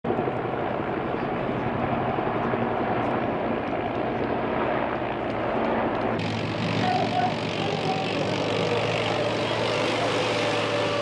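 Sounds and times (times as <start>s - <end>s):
helicopter engine and rotor drone: 0.1s - 11.0s.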